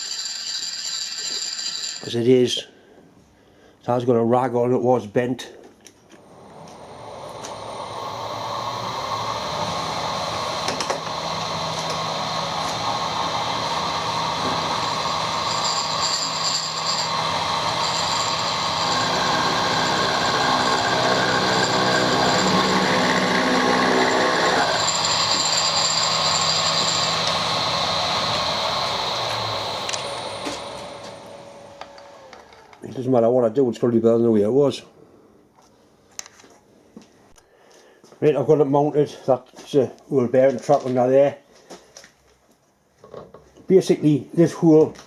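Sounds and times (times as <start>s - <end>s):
machine tool motor hum: 6.2s - 32.8s
high-pitched cutting whine: 6.4s - 32.6s
cutting tool chatter: 10.4s - 32.5s.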